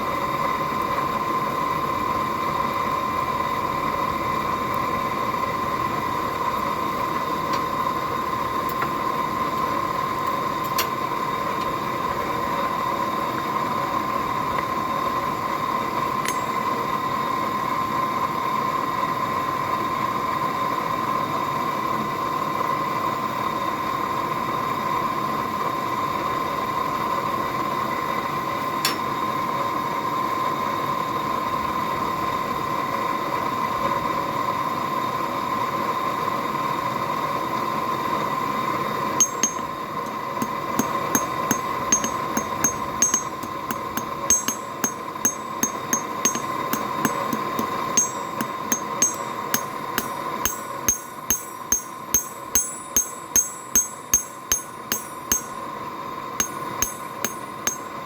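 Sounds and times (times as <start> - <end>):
hammer blows on anvil: 16.3 - 16.7, 39.2 - 55.8, 56.4 - 58.0.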